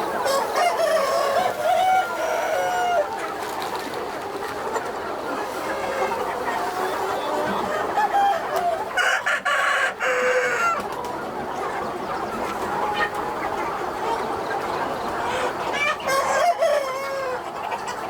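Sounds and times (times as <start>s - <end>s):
chickens clucking: 0.0s - 18.0s.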